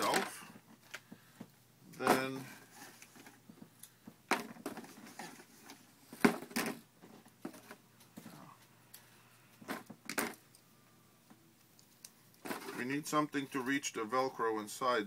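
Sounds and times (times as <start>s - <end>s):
handling clicks and rustles: 11.2s - 13.6s.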